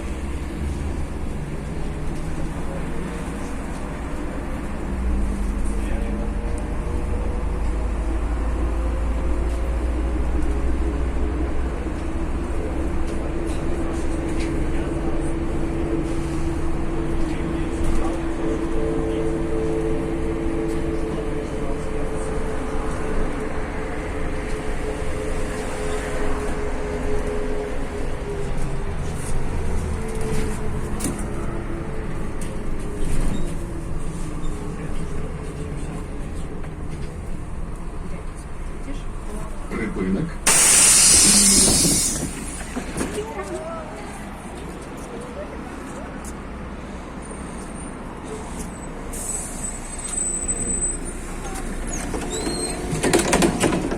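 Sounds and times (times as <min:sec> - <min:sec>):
bus engine drone: 0:00.0 - 0:53.9
road noise: 0:00.0 - 0:53.9
gear whine: 0:40.5 - 0:42.8.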